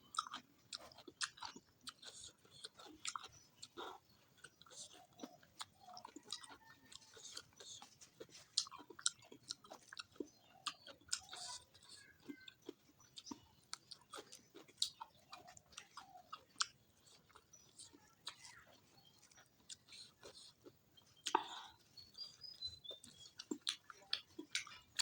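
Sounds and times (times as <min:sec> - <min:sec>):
wet chewing mouth smacks: 0:00.1 - 0:25.0
mouth clicks: 0:08.7 - 0:25.0.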